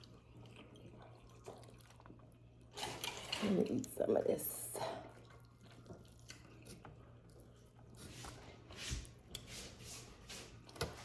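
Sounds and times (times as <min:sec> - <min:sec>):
person chewing food: 0:05.1 - 0:09.8.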